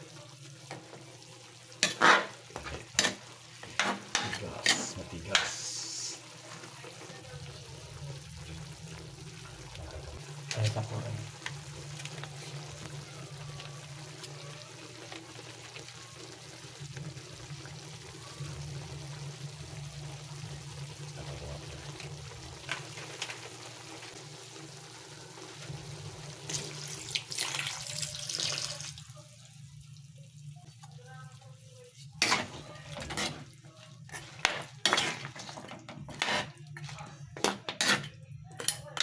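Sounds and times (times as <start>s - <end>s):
tap water running into sink: 26.3s - 29.1s.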